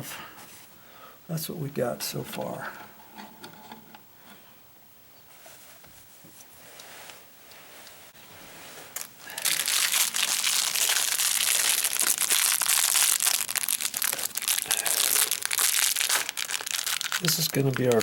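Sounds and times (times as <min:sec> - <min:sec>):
packaging crinkling: 0:08.9 - 0:18.0.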